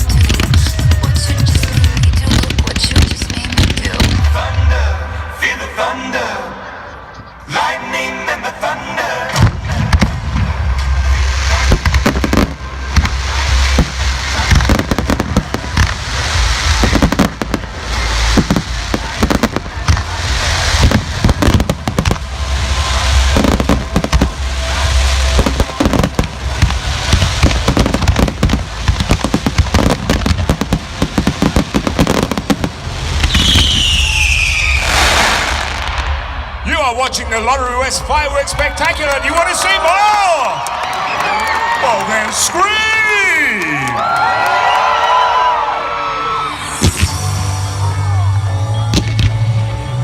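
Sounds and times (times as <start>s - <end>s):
deep rumbling boom: 0.0s - 5.4s, 9.4s - 39.0s
fireworks bangs: 0.0s - 5.6s, 9.3s - 41.3s, 46.2s - 47.9s, 48.8s - 50.0s
falling firework whistle: 31.1s - 36.5s.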